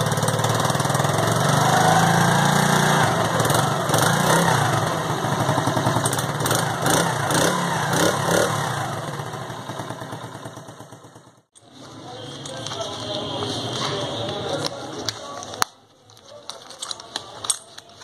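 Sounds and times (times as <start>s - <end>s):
motorcycle engine revving: 0.0s - 11.6s.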